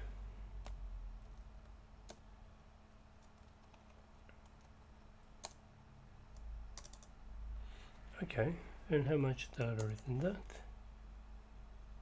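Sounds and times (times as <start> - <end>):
faint low hum: 0.0 - 12.0
computer clicks: 5.4 - 5.6, 6.3 - 7.1.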